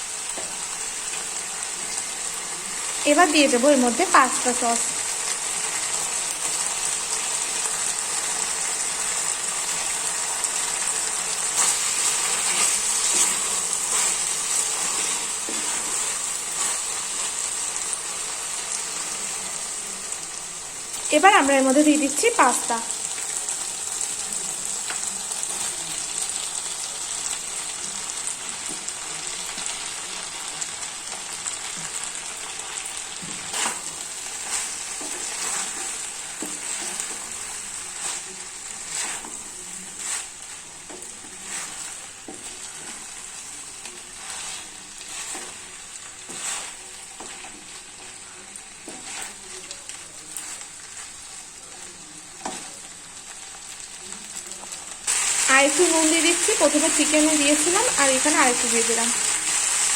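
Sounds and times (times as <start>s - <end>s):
food sizzling in a frying pan: 0.0s - 59.9s
utensil scraping pan: 33.3s - 43.1s, 46.2s - 47.5s.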